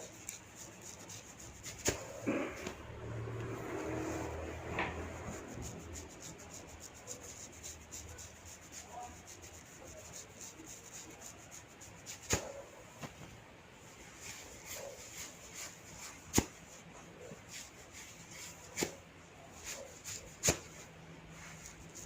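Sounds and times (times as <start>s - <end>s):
hands rubbing a head: 0.0s - 13.2s, 14.1s - 22.0s.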